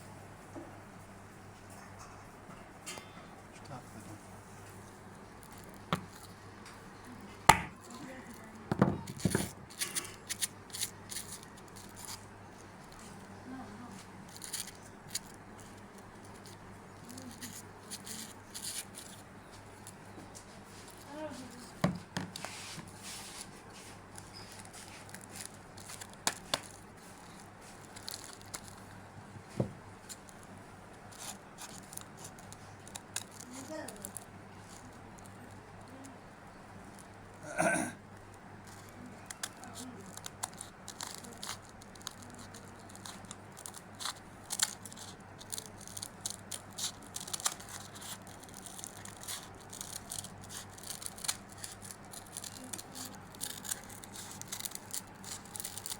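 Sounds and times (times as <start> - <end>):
small objects clicking and rustling: 5.4 - 6.4, 7.7 - 20.1, 24.1 - 29.0, 30.1 - 36.2, 38.2 - 55.9.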